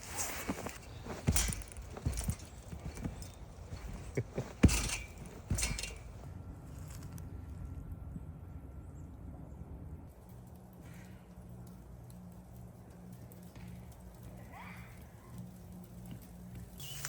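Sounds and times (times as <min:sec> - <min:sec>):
dull footsteps with scuffs: 0:00.0 - 0:06.2.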